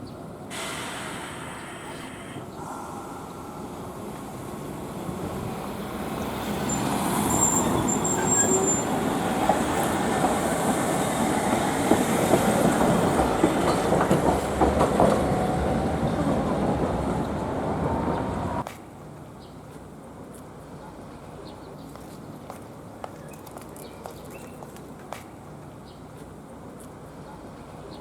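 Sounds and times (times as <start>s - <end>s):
streetcar running on rails: 0.0s - 28.0s
high wheel squeal: 6.4s - 9.0s
wheel clacks on track: 11.5s - 15.6s.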